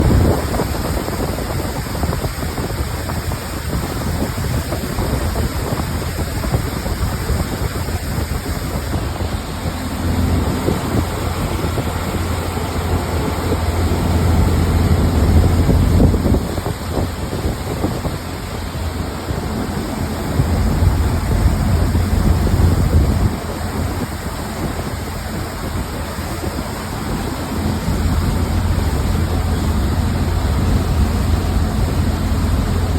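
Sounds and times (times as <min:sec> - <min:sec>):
water rushing past a boat: 0:00.0 - 0:32.9
wind buffeting the microphone: 0:00.0 - 0:32.9
steady low hum: 0:06.9 - 0:32.9.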